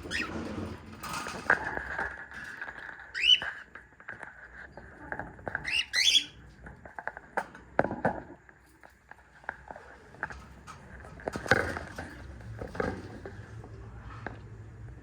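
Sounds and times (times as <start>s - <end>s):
cockatiels chirping: 0.1s - 0.3s, 3.1s - 3.6s, 5.6s - 6.4s.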